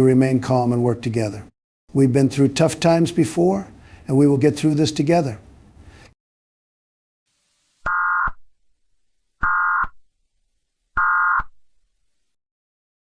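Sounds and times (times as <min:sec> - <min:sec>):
short buzzing data bursts: 0:07.9 - 0:08.4, 0:09.4 - 0:10.0, 0:11.0 - 0:11.5.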